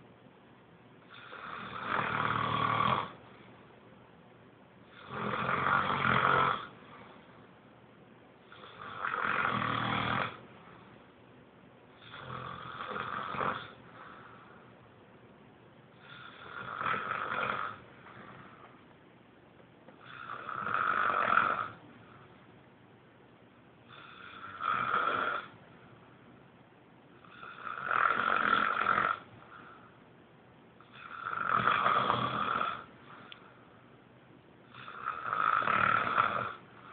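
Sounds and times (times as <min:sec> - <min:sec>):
person snoring: 0:01.1 - 0:03.2, 0:04.9 - 0:07.1, 0:08.5 - 0:10.4, 0:12.0 - 0:14.6, 0:16.0 - 0:18.7, 0:20.0 - 0:21.8, 0:23.8 - 0:25.6, 0:27.2 - 0:29.3, 0:30.9 - 0:33.4, 0:34.7 - 0:36.9.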